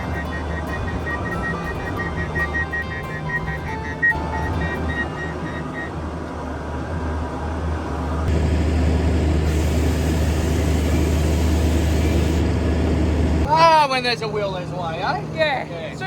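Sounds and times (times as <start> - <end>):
background tune: 0.0 - 6.2
heavy vehicle engine running: 0.0 - 16.0.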